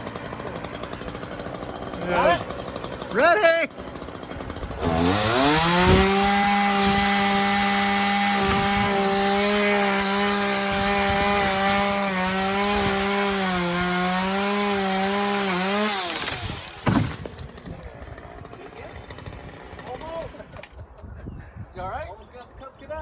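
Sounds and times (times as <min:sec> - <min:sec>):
chainsaw cutting branch: 0:00.0 - 0:20.8.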